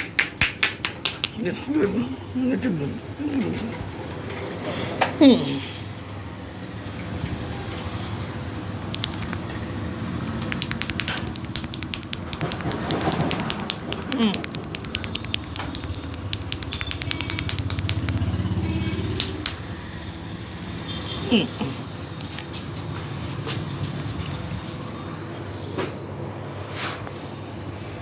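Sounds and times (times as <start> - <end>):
hands slapping and tapping head: 0.0 - 1.4, 10.4 - 18.4
street traffic: 0.0 - 28.0.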